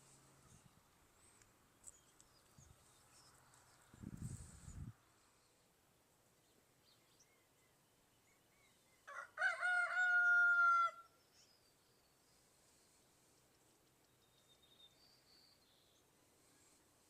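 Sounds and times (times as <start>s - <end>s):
rooster crowing: 9.0s - 11.1s.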